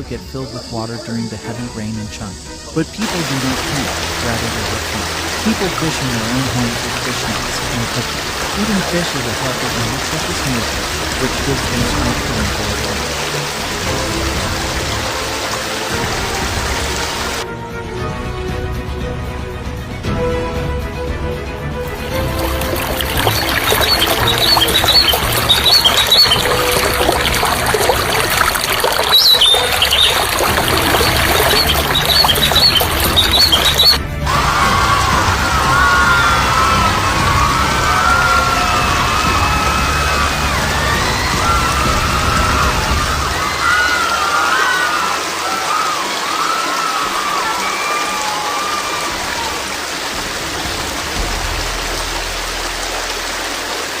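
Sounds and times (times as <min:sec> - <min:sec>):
loud rushing water: 0:02.9 - 0:17.5, 0:21.8 - 0:54.0
high squeaking chirps: 0:22.3 - 0:34.0.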